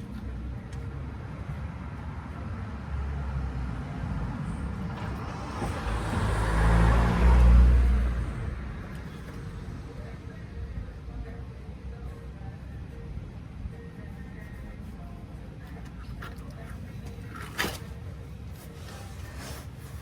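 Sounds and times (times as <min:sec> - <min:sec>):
low traffic rumble: 0:00.0 - 0:20.0
car passing by: 0:02.8 - 0:09.5.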